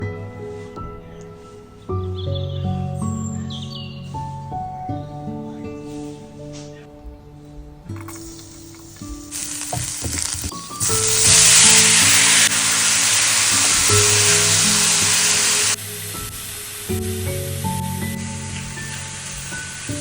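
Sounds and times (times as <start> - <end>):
background music: 0.0 - 20.0
food sizzling in a frying pan: 8.2 - 20.0.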